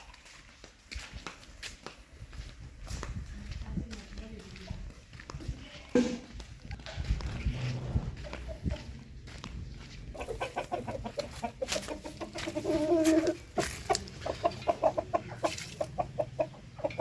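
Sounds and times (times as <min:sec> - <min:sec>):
chickens clucking: 0:05.9 - 0:17.0.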